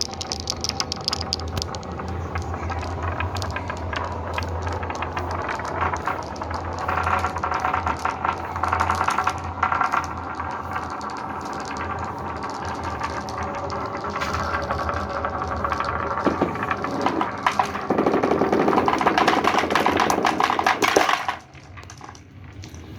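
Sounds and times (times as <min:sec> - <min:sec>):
marbles clattering down a track: 0:00.0 - 0:22.9.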